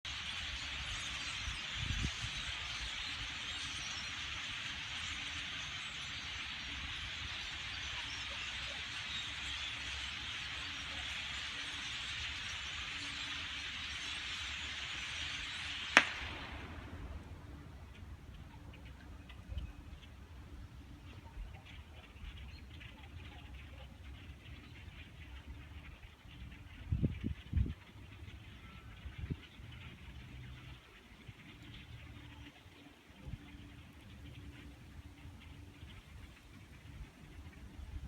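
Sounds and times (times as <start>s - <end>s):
flock of birds chattering: 0.0s - 38.0s
sharp pop: 15.9s - 17.0s.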